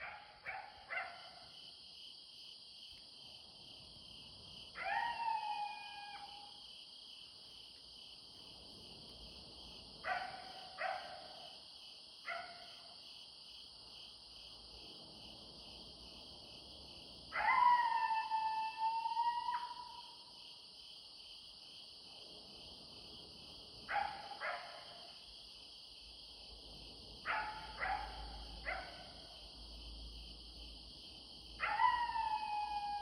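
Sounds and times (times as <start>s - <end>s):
night insects chorus: 0.0s - 33.0s.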